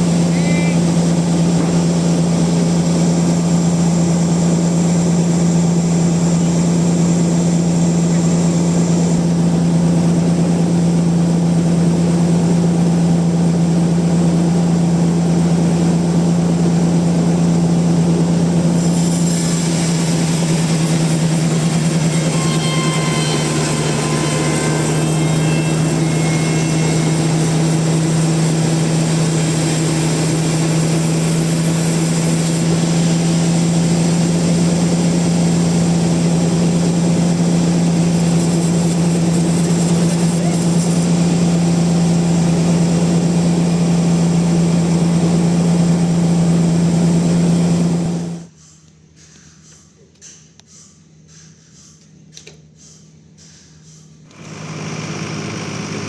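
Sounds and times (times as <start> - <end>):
sawmill engine drone: 0.0 - 48.5, 54.3 - 56.0
high hiss: 18.7 - 41.4.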